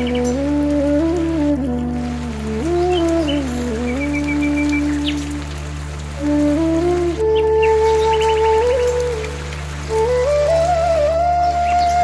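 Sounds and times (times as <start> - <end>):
flute-like held note: 0.0 - 12.0
rain hissing: 0.0 - 12.0.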